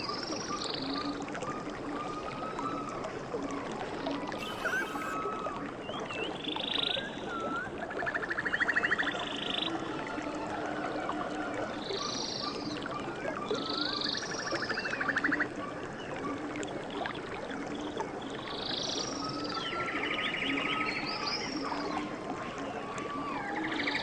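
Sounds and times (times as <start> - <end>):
birds calling: 4.4 - 5.2
flowing water rushing: 4.4 - 5.2.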